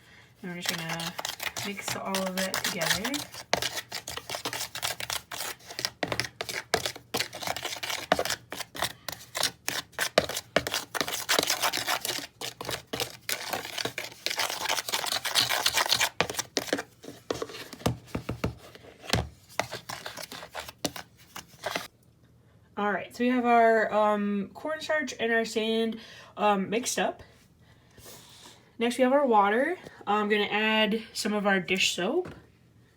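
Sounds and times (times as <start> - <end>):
spoon scraping dry sand: 0.4 - 17.7, 19.6 - 21.9.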